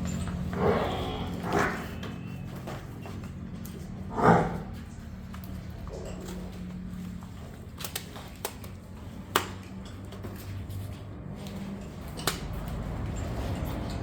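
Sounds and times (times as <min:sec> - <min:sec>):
steady low hum: 0:03.8 - 0:07.3.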